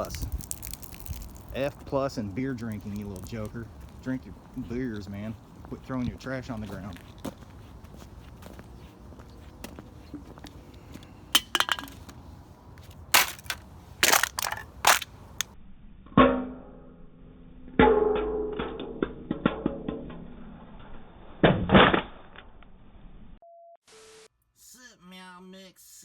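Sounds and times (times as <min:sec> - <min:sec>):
metal cans clanking: 0:11.4 - 0:12.0, 0:13.2 - 0:15.1.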